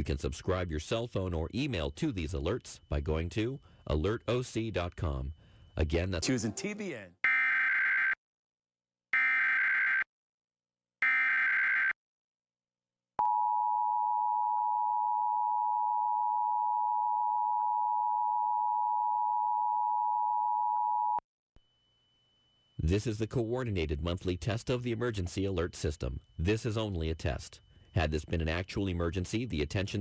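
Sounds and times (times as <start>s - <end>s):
warbling digital data tones: 21.7s - 30.0s.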